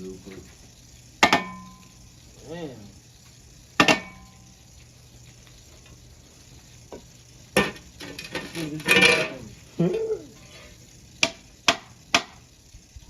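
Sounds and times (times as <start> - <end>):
metallic strikes on a ceiling fan: 1.2 - 2.1, 3.7 - 4.7, 6.9 - 9.5, 11.2 - 12.5
person calling out loudly: 9.8 - 10.4.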